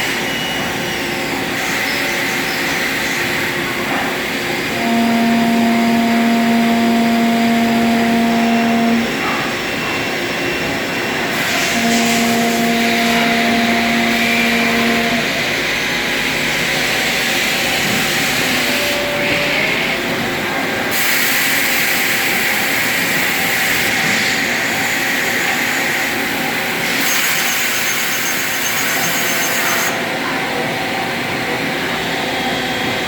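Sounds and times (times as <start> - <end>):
machine running: 0.0 - 33.0
motor hum: 4.7 - 9.4, 11.3 - 16.3.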